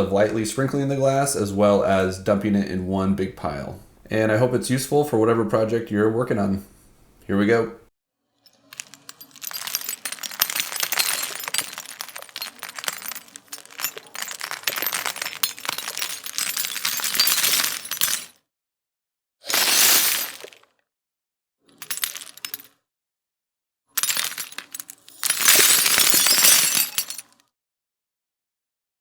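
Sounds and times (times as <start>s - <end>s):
glass crash: 8.6s - 18.3s, 19.5s - 20.6s, 24.0s - 27.2s
glass fragments tinkling onto glass: 8.6s - 18.3s, 19.5s - 20.6s, 24.0s - 27.2s.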